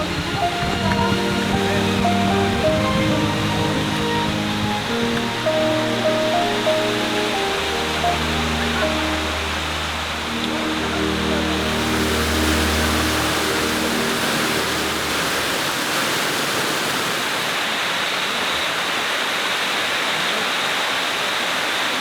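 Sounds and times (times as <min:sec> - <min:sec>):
soft background music: 0:00.0 - 0:15.5
waterfall rushing: 0:00.0 - 0:22.0.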